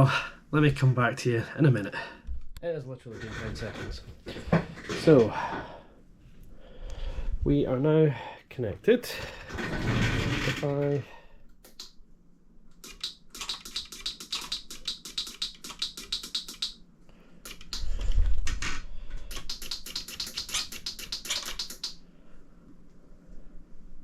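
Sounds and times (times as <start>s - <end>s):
bicycle derailleur rapid clicking: 12.8s - 16.8s, 19.3s - 22.0s.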